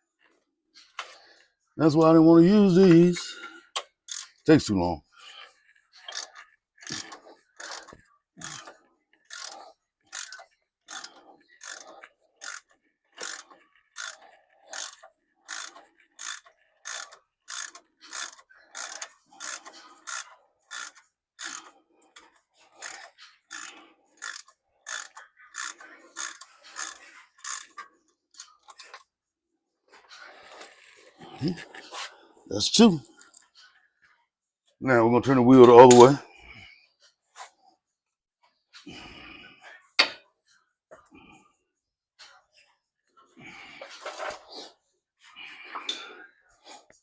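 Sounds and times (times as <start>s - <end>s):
ratchet wrench clicking: 4.1s - 4.4s, 6.1s - 8.7s, 9.3s - 21.6s, 22.8s - 27.8s.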